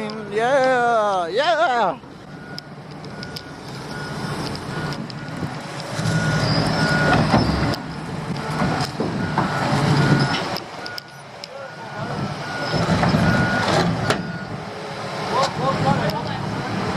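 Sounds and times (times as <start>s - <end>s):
diesel engine running: 2.0s - 16.9s
reversing alarm beeping: 2.3s - 7.8s, 9.2s - 14.6s.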